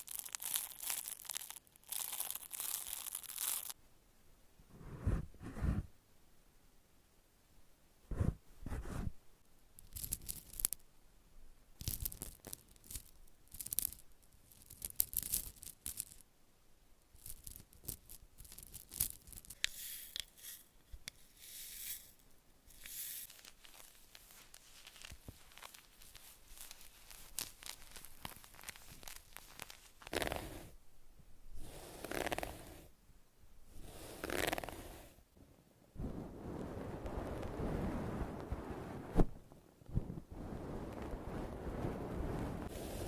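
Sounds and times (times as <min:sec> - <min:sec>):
packaging crinkling and tearing: 0:00.0 - 0:03.8, 0:22.8 - 0:30.4.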